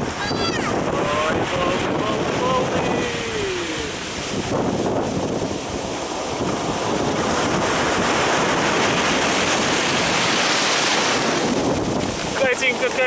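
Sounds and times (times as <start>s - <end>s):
surf washing up a beach: 0.0s - 13.0s
wind buffeting microphone: 0.0s - 13.0s.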